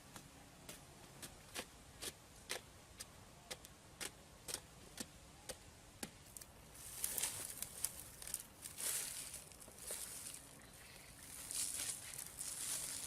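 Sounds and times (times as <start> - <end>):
scraping and rustling: 11.2 - 13.0.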